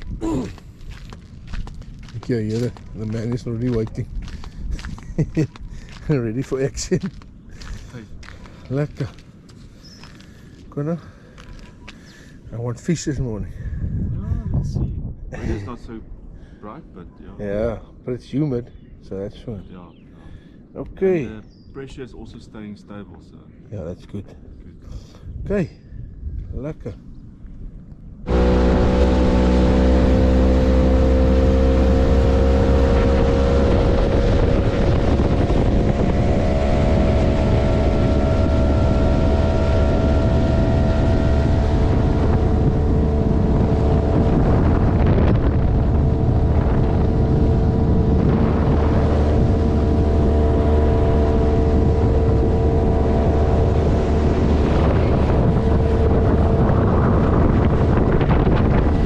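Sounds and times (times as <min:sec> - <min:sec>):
wind buffeting microphone: 0:00.0 - 0:59.0
motorboat engine running: 0:28.3 - 0:59.0.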